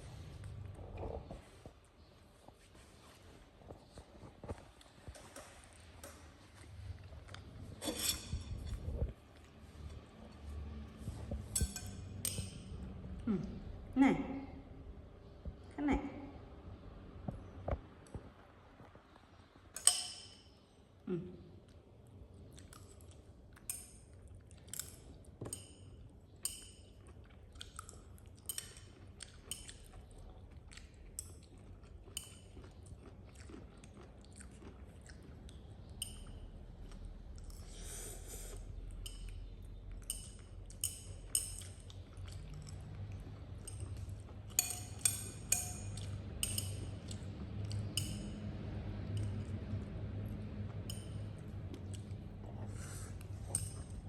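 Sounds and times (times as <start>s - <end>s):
low hum: 38.6s - 54.0s.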